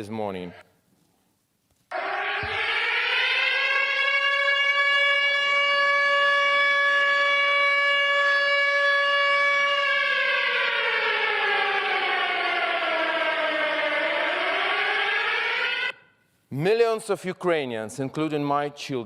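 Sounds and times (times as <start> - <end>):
air raid siren wailing: 1.9 - 16.2.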